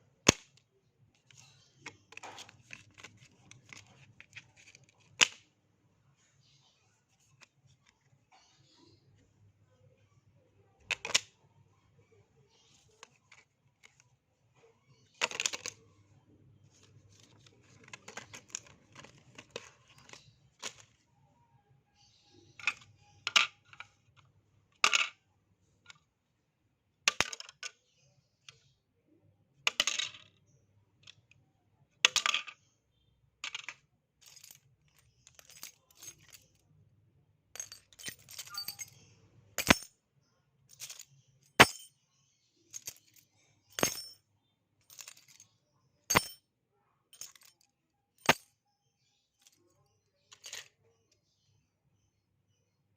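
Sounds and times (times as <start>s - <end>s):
small hard objects clattering: 16.8s - 20.9s, 37.6s - 39.0s, 39.6s - 39.9s, 40.7s - 41.9s, 42.7s - 44.1s, 46.1s - 46.4s.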